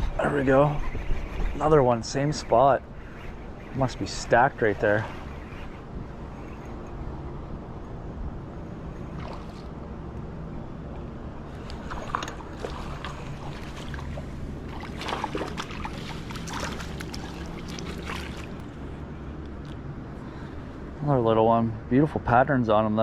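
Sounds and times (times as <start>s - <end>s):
creek water running: 1.5s - 6.9s, 9.0s - 9.9s, 11.5s - 19.1s
water splashes: 9.1s - 9.8s, 11.7s - 18.9s.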